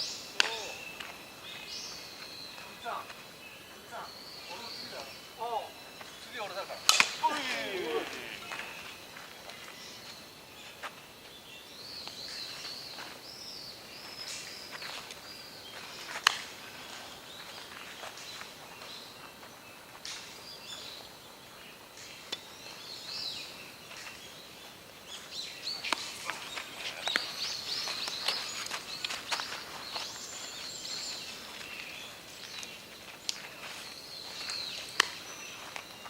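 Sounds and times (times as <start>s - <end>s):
birds chirping: 0.0s - 36.0s
sharp crack: 6.8s - 8.5s, 35.0s - 35.2s.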